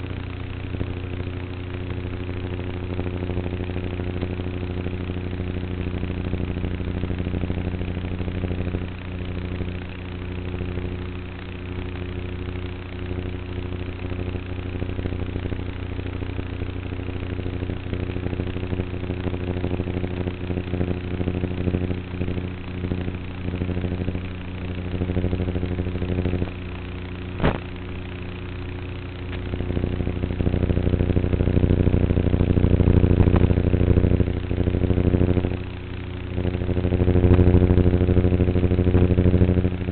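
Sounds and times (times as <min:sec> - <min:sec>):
model plane motor humming: 0:00.0 - 0:39.9
sharp click: 0:27.4 - 0:27.7.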